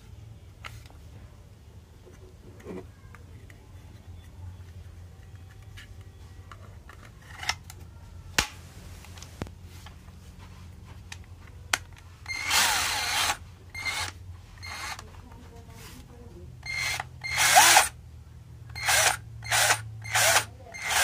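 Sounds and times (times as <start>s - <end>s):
low steady hum: 0.0s - 21.0s
cordless drill parts clicking: 18.8s - 21.0s.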